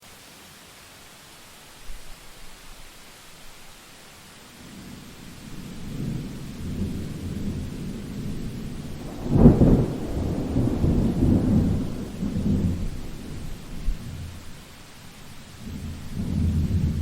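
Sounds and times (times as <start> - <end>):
rain hiss: 0.0 - 17.0
thunder rumbling and cracking: 4.8 - 14.6, 15.6 - 17.0.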